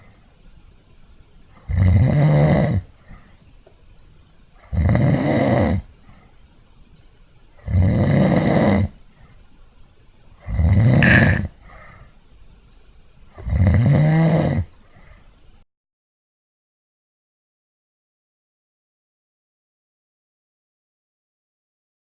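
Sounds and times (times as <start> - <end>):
person snoring: 11.0 - 11.5.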